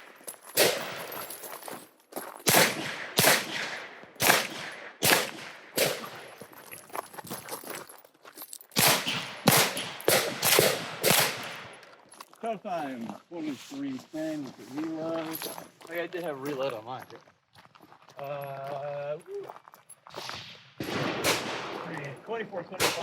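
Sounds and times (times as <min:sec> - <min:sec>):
pistol shots with ringing echo: 0:00.6 - 0:01.2, 0:02.5 - 0:06.4, 0:08.8 - 0:11.8, 0:20.8 - 0:23.0.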